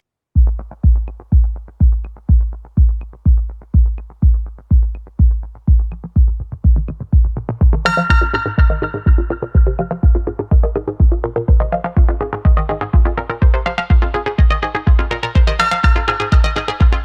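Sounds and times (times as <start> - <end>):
kick drum beat: 0.4 - 17.0
sustained synth chords: 5.8 - 17.0.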